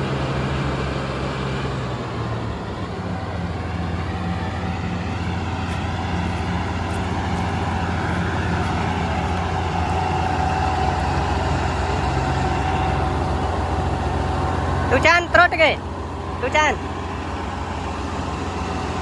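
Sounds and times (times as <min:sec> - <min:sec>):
diesel engine running: 0:02.8 - 0:19.0.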